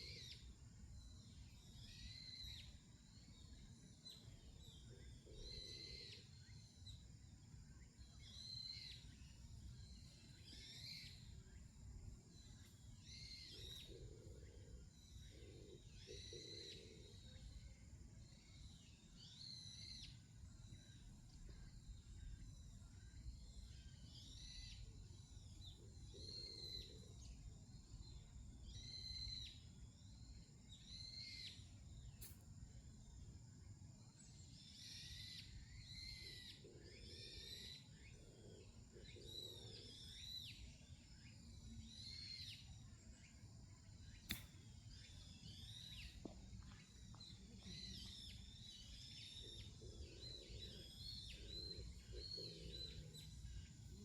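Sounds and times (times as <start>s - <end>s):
songbirds chirping: 0.0s - 54.0s
sharp click: 32.2s - 32.4s, 44.3s - 44.6s.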